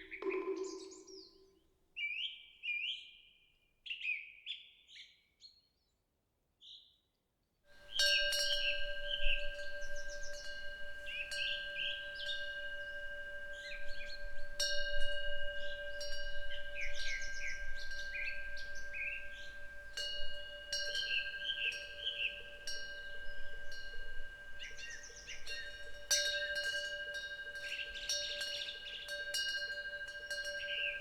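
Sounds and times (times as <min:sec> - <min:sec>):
wind bell ringing: 0:00.0 - 0:01.3, 0:07.8 - 0:31.0
small birds chirping: 0:07.9 - 0:14.3, 0:15.5 - 0:20.1, 0:20.7 - 0:26.6.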